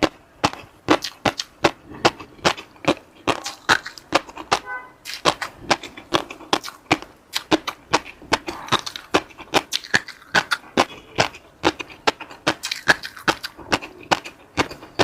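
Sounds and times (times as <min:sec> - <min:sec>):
person chewing food: 0:00.0 - 0:15.0.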